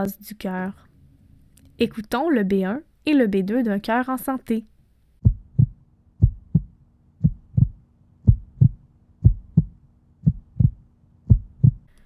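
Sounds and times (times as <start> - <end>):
heartbeat lub-dub: 5.2 - 11.9.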